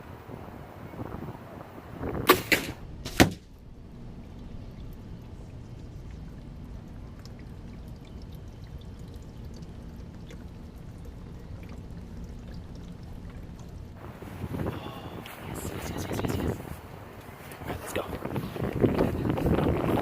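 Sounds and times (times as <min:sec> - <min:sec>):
small drips and ticks: 0:03.5 - 0:14.0
liquid pouring and trickling: 0:03.5 - 0:14.6.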